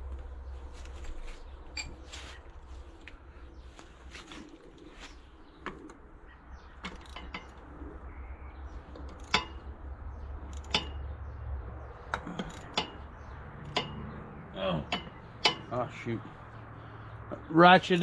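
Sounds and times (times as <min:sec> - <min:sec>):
ratchet wrench clicking on metal: 0:06.8 - 0:07.9, 0:08.8 - 0:11.2, 0:12.0 - 0:14.2, 0:14.9 - 0:15.8.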